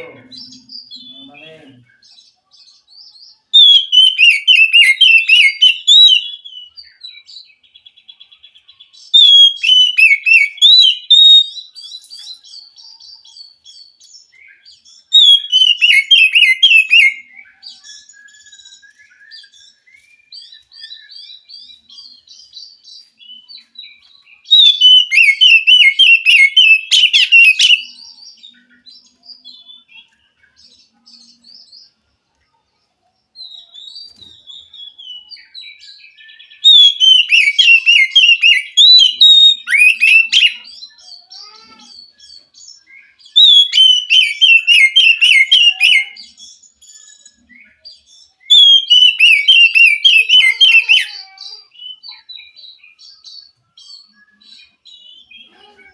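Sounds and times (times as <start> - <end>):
bird singing chattering notes: 9.1 - 12.8, 13.5 - 31.9, 33.5 - 55.9.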